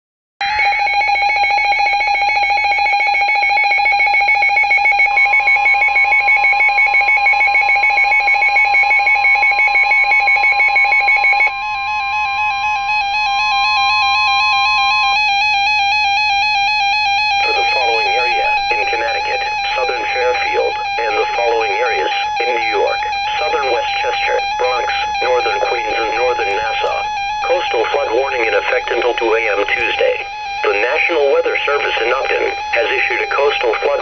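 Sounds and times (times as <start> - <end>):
pulsing two-pitch alert tone: 12.5 - 34.0.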